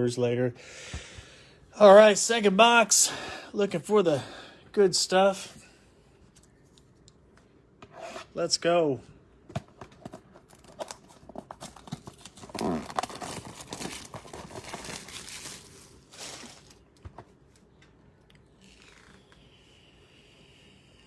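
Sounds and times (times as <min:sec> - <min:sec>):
plastic wrappers crinkling: 0:10.4 - 0:17.0
cardboard box tearing: 0:10.6 - 0:16.8.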